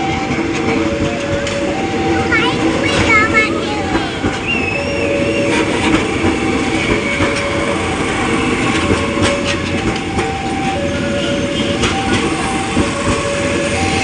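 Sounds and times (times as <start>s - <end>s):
train wheels clattering: 0.0s - 14.0s
wheel squeal: 6.7s - 7.8s.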